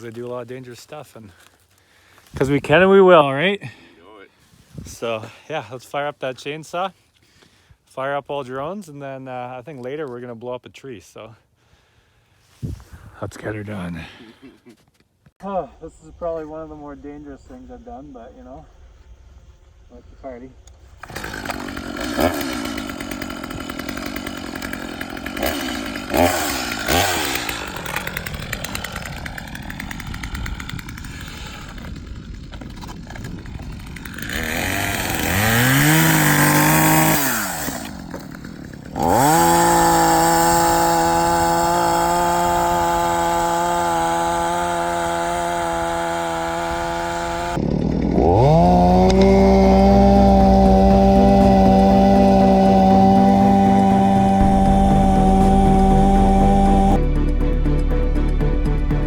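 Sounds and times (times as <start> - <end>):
chainsaw engine revving: 21.0 - 57.0.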